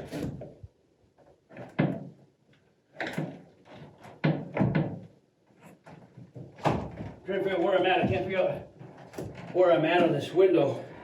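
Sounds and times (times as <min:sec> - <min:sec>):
window knocking against frame: 0:04.2 - 0:05.1.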